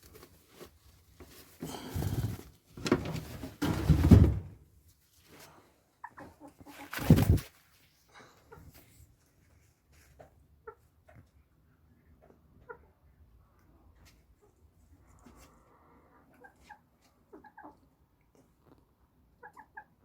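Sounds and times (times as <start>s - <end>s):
rustling and bumping near microphone: 1.2s - 4.6s, 6.9s - 7.5s
hens clucking: 6.0s - 7.4s, 16.1s - 18.0s, 19.4s - 20.0s.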